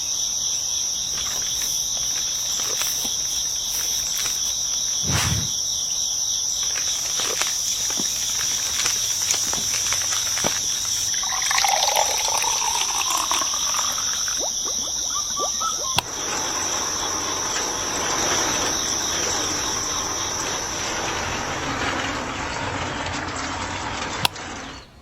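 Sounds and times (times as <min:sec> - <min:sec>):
water running and pouring: 0:06.7 - 0:16.5.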